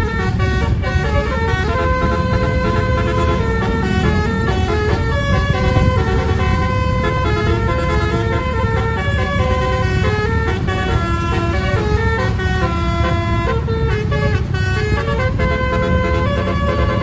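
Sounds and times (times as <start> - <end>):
musical air horn melody: 0.0 - 17.0.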